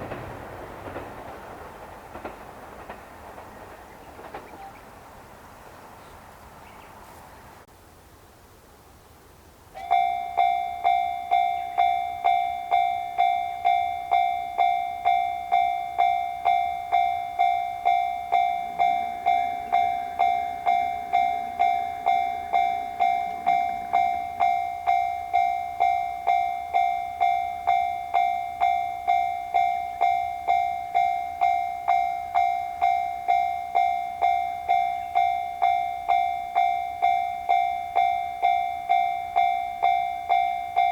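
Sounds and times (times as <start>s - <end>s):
railroad crossing bell ringing: 9.7s - 40.9s.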